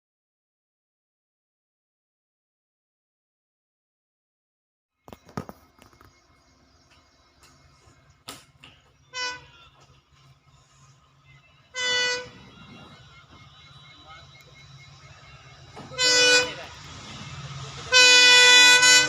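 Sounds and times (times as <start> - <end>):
locomotive horn blasts: 9.0 - 9.9, 11.6 - 19.0.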